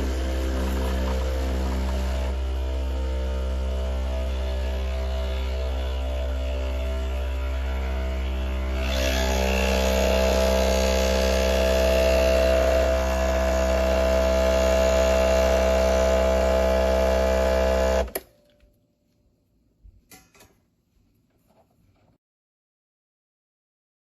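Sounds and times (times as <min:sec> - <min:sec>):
espresso machine pump buzzing: 0:00.0 - 0:18.2.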